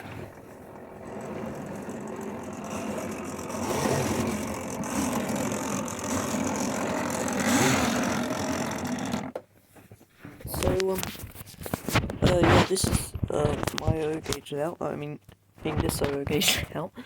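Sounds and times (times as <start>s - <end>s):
model train running on track: 0.0s - 9.3s.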